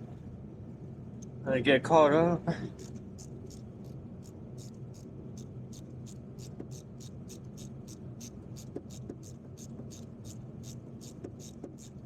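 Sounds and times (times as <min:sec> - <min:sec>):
low steady hum: 0:00.0 - 0:08.7.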